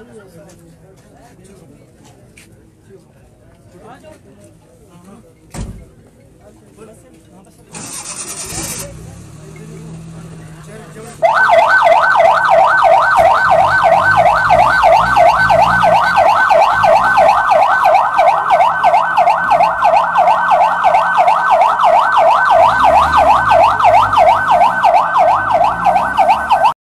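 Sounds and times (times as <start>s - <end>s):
ambulance siren yelping: 11.2s - 26.8s.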